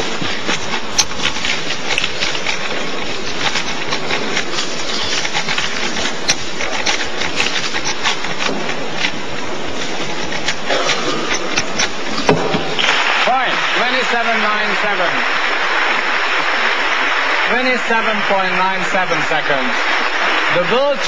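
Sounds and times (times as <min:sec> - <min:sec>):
crowded hall noise: 0:00.0 - 0:21.0.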